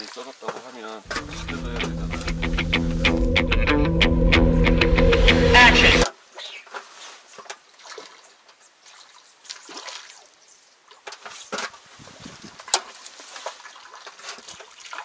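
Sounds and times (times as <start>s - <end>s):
water splashes: 0.0s - 1.1s, 6.6s - 11.0s, 11.7s - 15.0s.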